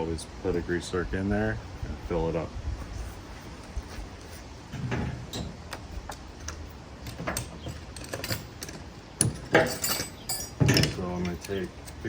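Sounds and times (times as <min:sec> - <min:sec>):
clicks and knocks of hard parts: 0:04.8 - 0:11.6.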